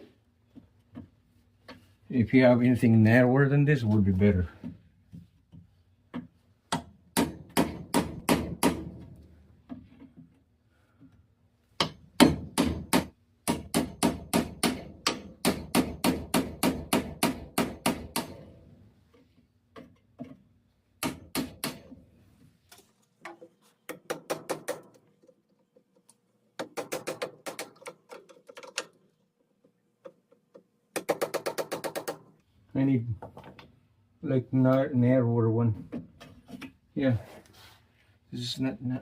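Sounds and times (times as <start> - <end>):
hammer tapping a chisel: 11.8 - 18.3.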